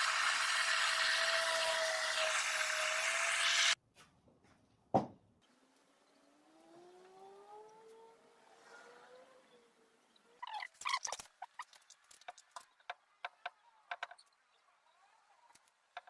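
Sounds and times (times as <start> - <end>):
electric power tool whining: 0.0 - 3.8.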